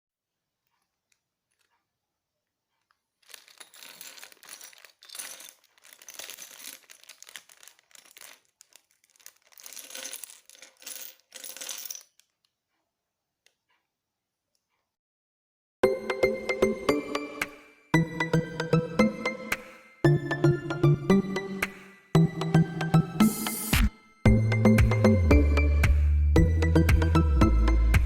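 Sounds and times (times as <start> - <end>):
plastic bricks clattering: 2.8 - 12.4.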